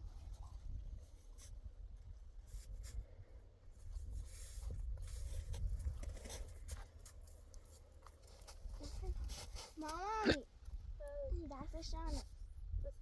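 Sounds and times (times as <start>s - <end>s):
scratching and rustling: 3.8s - 10.4s.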